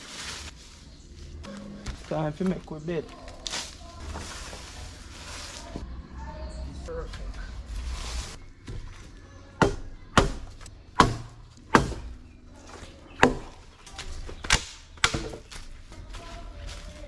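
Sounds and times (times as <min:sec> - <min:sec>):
blade chopping wood: 0:09.6 - 0:12.1.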